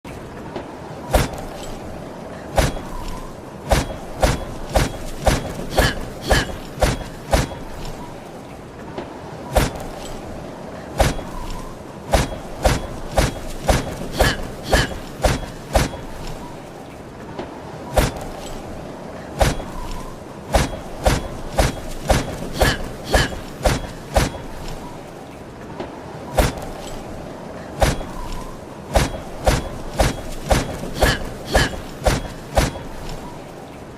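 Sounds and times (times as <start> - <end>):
sword strikes: 3.7 - 7.6, 12.1 - 16.0.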